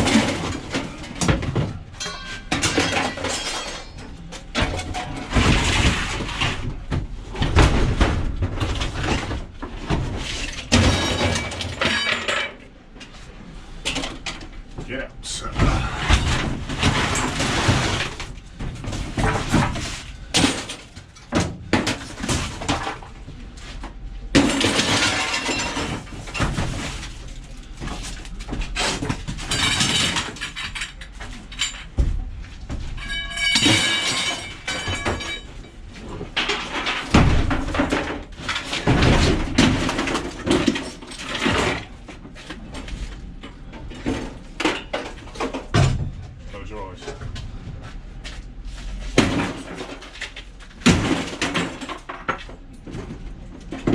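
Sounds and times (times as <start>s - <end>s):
appliance being smashed: 0.0s - 12.6s, 15.6s - 23.1s, 24.3s - 28.0s, 28.6s - 30.9s, 33.0s - 35.6s, 36.3s - 42.0s, 49.1s - 52.4s.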